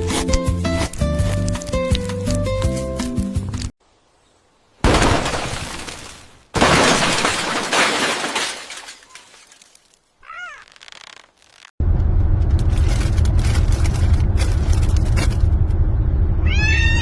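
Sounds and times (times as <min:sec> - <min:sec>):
loud breaking crashes: 0:04.8 - 0:09.6.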